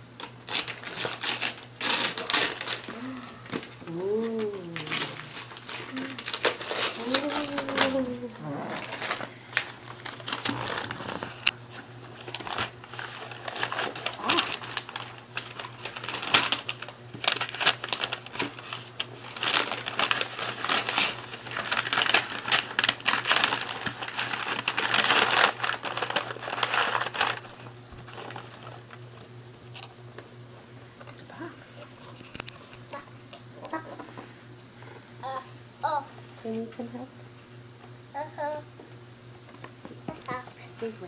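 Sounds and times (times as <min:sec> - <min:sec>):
wrapping paper crinkling and tearing: 0:00.2 - 0:29.9.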